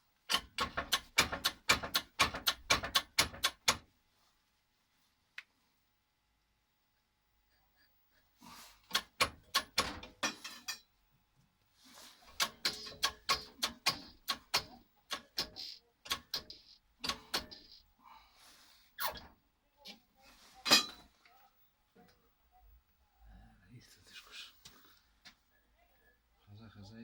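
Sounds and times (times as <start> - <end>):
hard parts clicking and clattering: 0.3 - 3.9, 8.8 - 10.9, 12.2 - 17.8.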